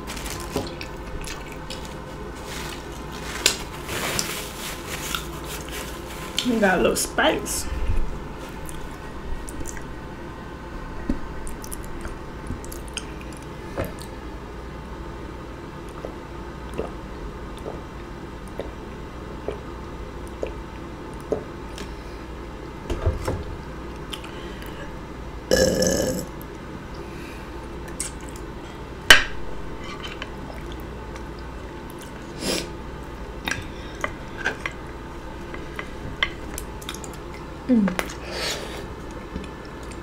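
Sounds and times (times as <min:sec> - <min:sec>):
woman burping: 0:25.5 - 0:26.3.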